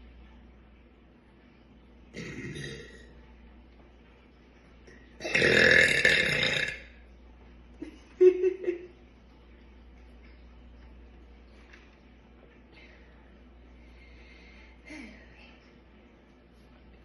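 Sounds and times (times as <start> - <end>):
woman burping loudly: 2.1 - 3.1, 5.2 - 6.9.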